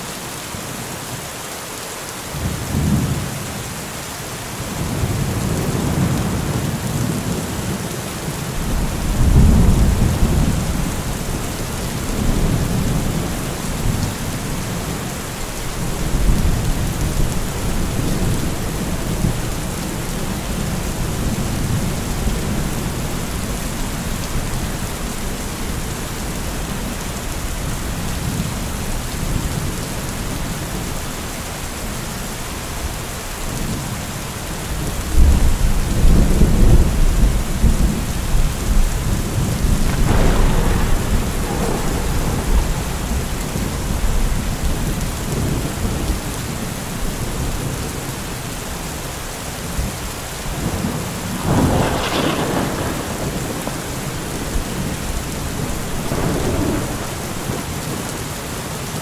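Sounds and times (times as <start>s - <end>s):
heavy rain: 0.0s - 59.0s
rumbling thunder: 4.8s - 15.1s, 35.0s - 48.0s, 49.7s - 58.4s.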